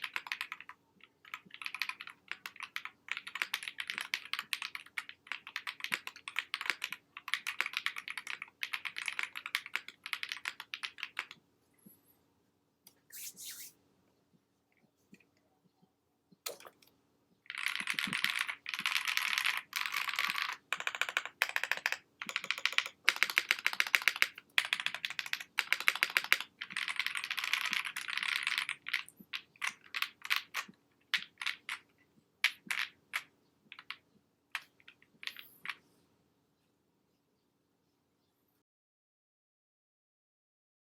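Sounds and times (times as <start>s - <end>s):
mechanical keyboard typing: 0.0s - 11.4s, 17.5s - 31.8s.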